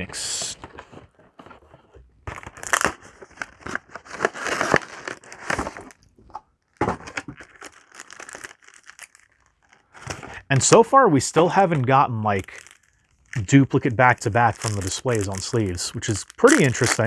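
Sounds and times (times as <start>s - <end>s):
foil wrapper crinkling and tearing: 2.3s - 6.0s, 6.8s - 10.3s, 12.3s - 17.0s.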